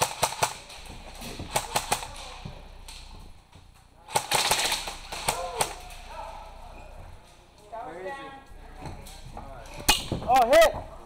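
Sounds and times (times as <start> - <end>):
airsoft guns firing: 0.0 - 3.1, 4.1 - 6.1.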